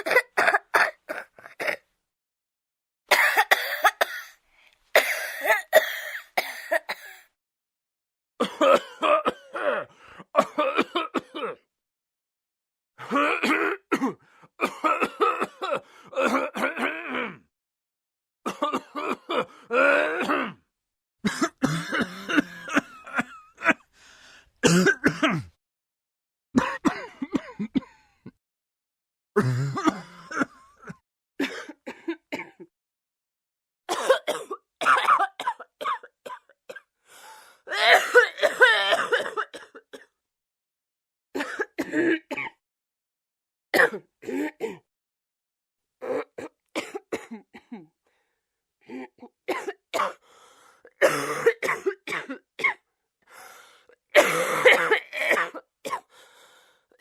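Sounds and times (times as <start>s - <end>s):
person coughing: 0.0s - 1.8s, 3.1s - 4.4s, 5.0s - 7.3s, 8.4s - 11.6s, 13.0s - 17.4s, 18.5s - 20.6s, 21.2s - 23.8s, 24.6s - 25.6s, 26.6s - 28.4s, 29.4s - 32.7s, 33.9s - 36.9s, 37.7s - 40.2s, 41.4s - 42.6s, 43.8s - 44.9s, 46.0s - 47.9s, 48.9s - 50.2s, 50.9s - 52.8s, 54.2s - 56.1s.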